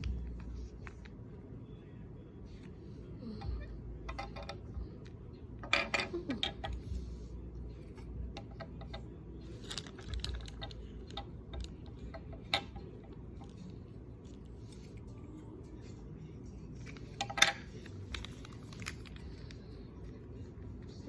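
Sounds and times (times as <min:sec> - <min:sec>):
toys and packaging clicking: 0:09.6 - 0:13.8, 0:16.8 - 0:19.6.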